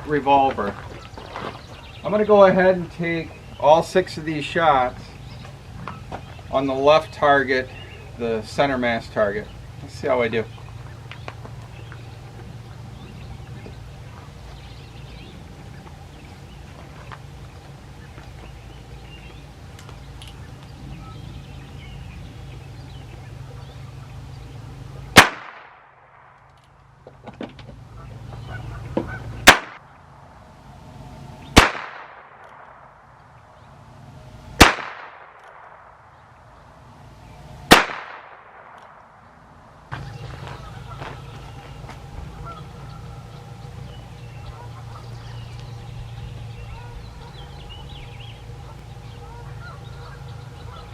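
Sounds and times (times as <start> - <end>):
low outdoor rumble: 0.0 - 50.9
revolver gunshots with echo: 25.1 - 26.5, 29.4 - 29.8, 31.5 - 33.1, 34.6 - 36.4, 37.7 - 39.4.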